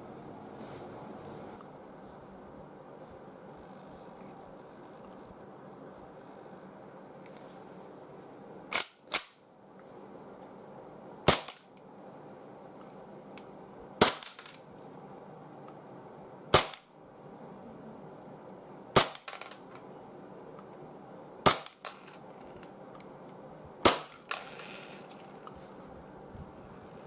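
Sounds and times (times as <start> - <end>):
airsoft pistol shots: 11.3 - 11.7, 14.0 - 14.6, 16.5 - 16.9, 19.0 - 19.5, 21.4 - 22.0, 23.8 - 24.6.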